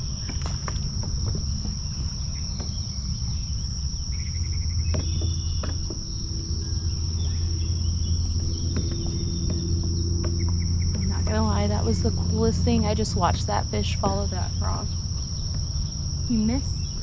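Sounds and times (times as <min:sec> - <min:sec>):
crickets trilling: 0:00.0 - 0:17.0
loud low rumble: 0:06.0 - 0:17.0.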